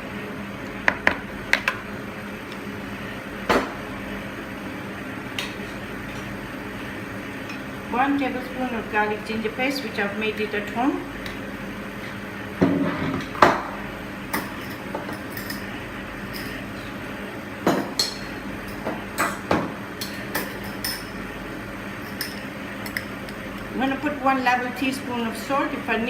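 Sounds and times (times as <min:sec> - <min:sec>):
spoon clinking against dishes: 0:22.0 - 0:23.4.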